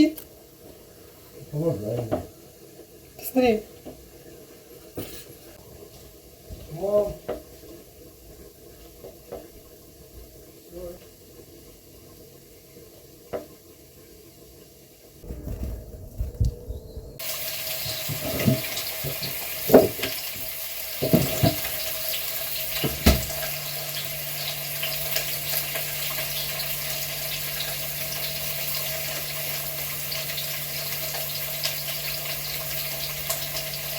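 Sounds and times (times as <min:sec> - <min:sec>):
tap running into a sink: 0:17.8 - 0:21.9, 0:22.7 - 0:23.6
sharp knocks and clatters: 0:21.0 - 0:21.7.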